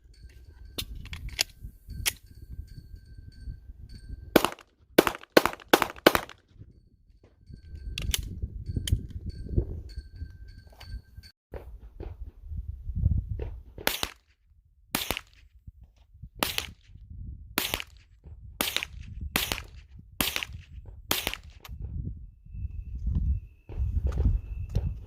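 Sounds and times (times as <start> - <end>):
pistol shots: 4.4 - 6.4, 13.8 - 14.3, 15.0 - 15.4, 17.6 - 21.6.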